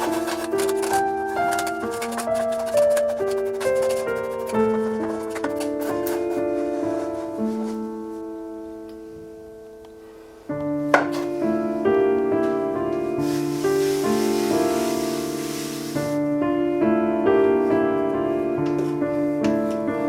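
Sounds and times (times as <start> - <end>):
piano music: 0.0 - 20.0
soft hiss: 6.6 - 16.4.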